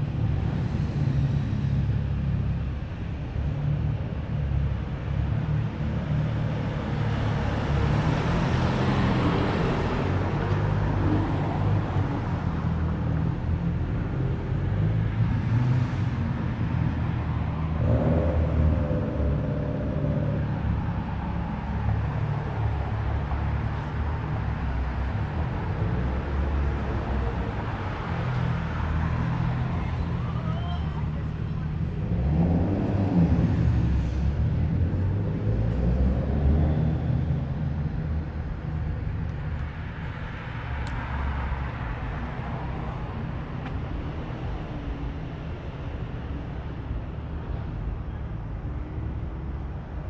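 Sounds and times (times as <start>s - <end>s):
car engines low exhaust rumble: 0.0s - 50.0s
car passing by: 6.8s - 46.0s.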